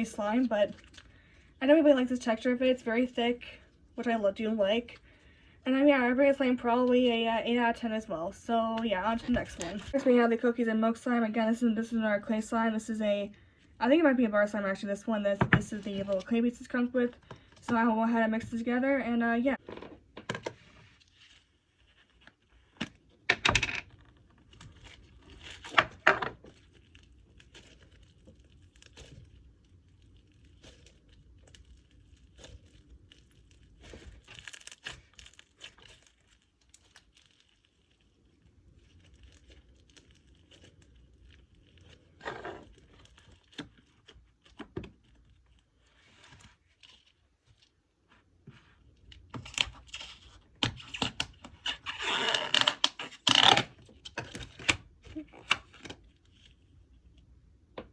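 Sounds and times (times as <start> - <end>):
sticky slime crackling: 23.9 - 47.8.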